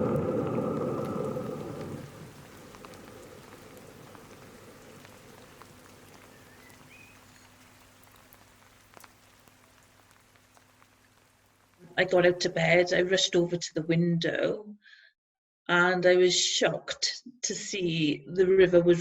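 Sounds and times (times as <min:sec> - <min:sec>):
drops ticking: 0:00.0 - 0:11.8
rain falling: 0:00.0 - 0:13.3.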